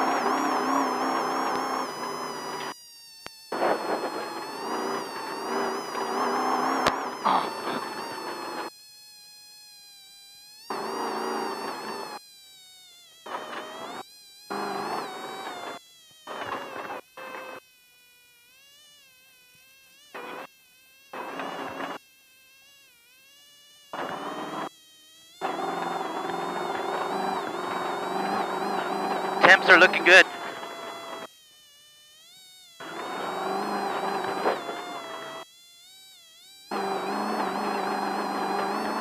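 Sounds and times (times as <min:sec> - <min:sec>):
engine and road noise: 0:00.0 - 0:02.7, 0:03.6 - 0:08.7, 0:14.5 - 0:15.7, 0:25.4 - 0:31.2, 0:32.8 - 0:35.4, 0:36.7 - 0:39.0
high-pitched vehicle whine: 0:00.0 - 0:08.8, 0:13.3 - 0:17.6, 0:19.5 - 0:22.0, 0:24.0 - 0:31.3, 0:32.8 - 0:39.0.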